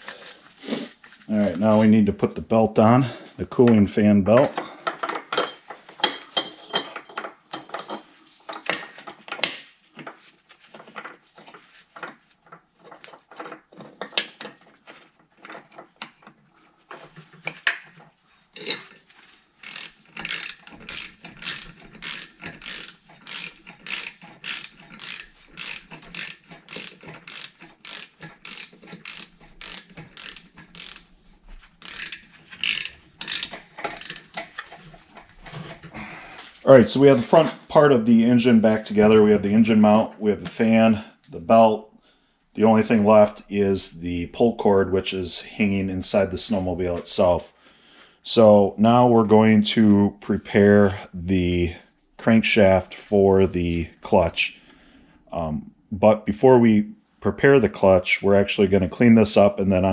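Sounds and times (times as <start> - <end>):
ratchet wrench clicking: 19.6 - 31.1, 31.8 - 34.3.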